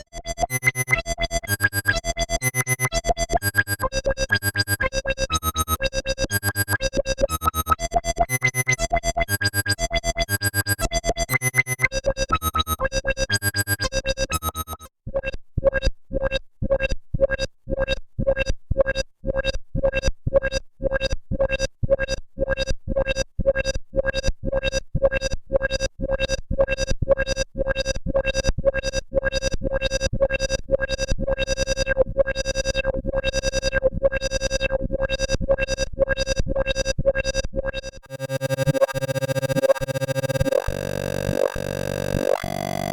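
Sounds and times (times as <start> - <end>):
low synth bass: 0.0 - 14.9, 38.1 - 42.9
synthesizer note pattern: 0.0 - 14.9, 38.0 - 42.9
synthesizer pulsing note: 0.0 - 14.9, 38.0 - 42.9.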